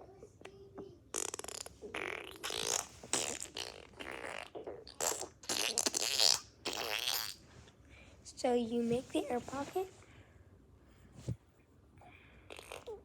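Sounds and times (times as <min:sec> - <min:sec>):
mouth fart noises: 0:01.1 - 0:07.5, 0:12.4 - 0:13.0.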